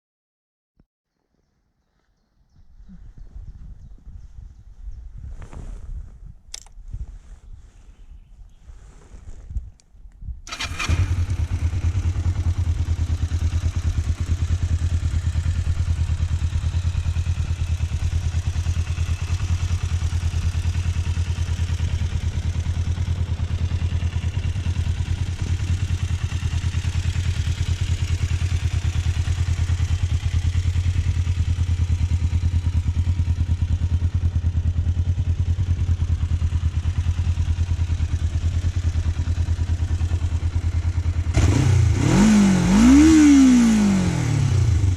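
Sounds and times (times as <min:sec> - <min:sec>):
motorcycle engine starting and idling: 0:10.4 - 0:44.9.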